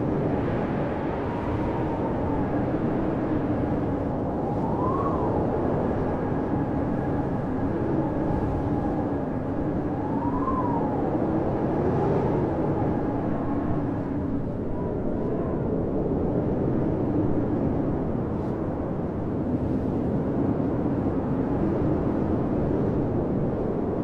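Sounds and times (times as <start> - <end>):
high wind whistle: 0.0 - 18.2
low moaning wind tone: 0.0 - 24.0
wind howling: 0.0 - 24.0.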